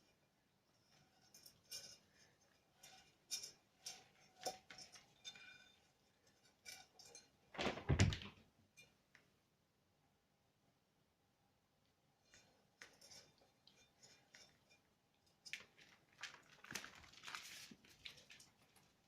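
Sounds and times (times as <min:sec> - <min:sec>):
heavy thud: 0:07.6 - 0:08.3.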